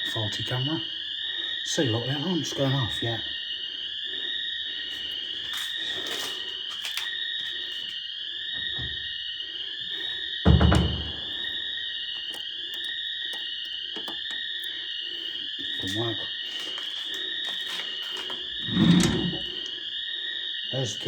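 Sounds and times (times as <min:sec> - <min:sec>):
loud thump: 0:10.5 - 0:11.2.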